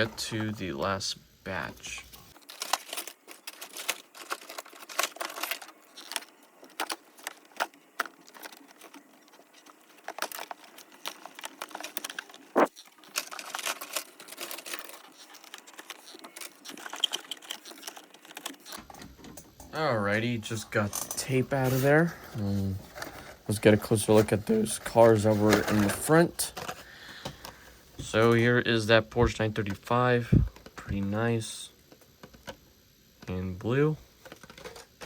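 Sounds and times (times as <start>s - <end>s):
packaging crinkling: 1.6s - 19.0s, 20.4s - 27.6s, 34.2s - 35.0s.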